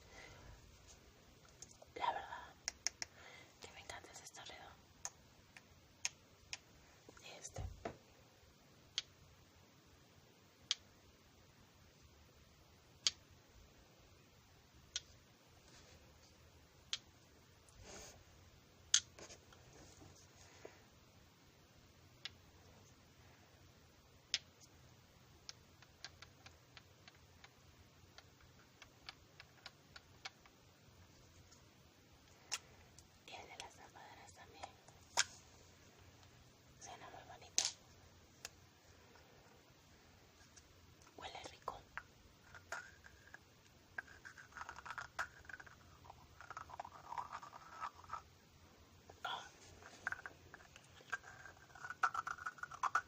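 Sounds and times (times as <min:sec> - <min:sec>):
quiet hiss: 0:00.0 - 0:53.0
small clicks and taps: 0:02.6 - 0:03.2
faint scratching and crackling: 0:32.4 - 0:48.3, 0:49.0 - 0:53.0.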